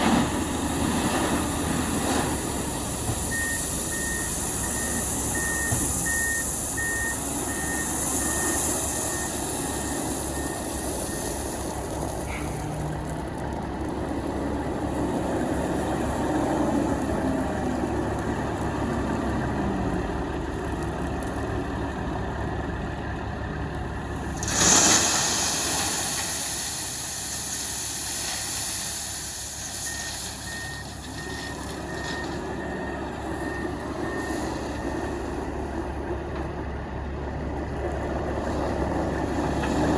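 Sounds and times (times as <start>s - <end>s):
diesel trucks running: 0.0s - 39.9s
loud hiss of air: 24.4s - 30.5s.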